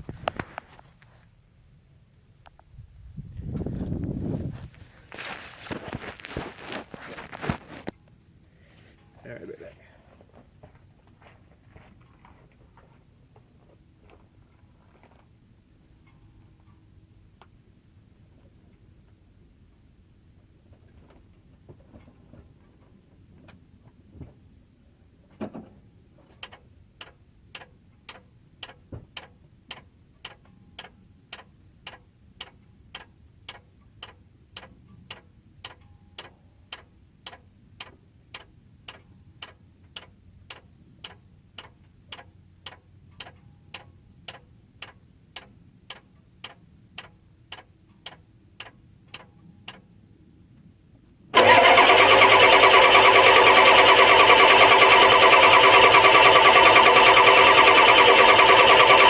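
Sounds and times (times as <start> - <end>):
light steady ticking: 26.3 - 49.9
diesel engine starter cranking: 51.4 - 59.0.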